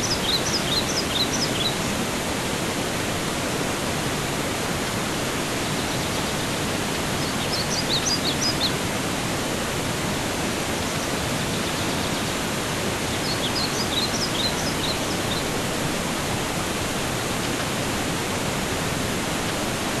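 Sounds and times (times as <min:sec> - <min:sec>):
running water: 0:00.0 - 0:20.0
bird chirping: 0:13.2 - 0:15.4.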